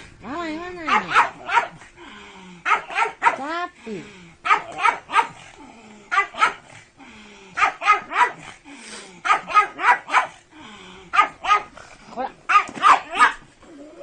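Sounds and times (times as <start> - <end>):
dog barking: 0.9 - 1.8, 2.6 - 3.5, 4.4 - 5.4, 6.1 - 6.7, 7.6 - 8.5, 9.2 - 10.4, 11.1 - 11.7, 12.5 - 13.4.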